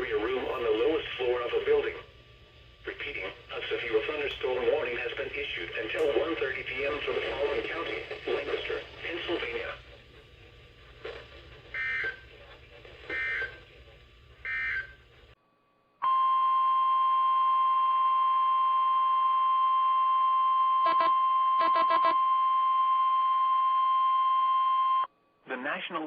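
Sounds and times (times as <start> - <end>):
steady alarm tone: 11.7 - 12.3, 13.1 - 13.6, 14.4 - 15.0, 18.4 - 25.1
digital data tone bursts: 20.8 - 22.2.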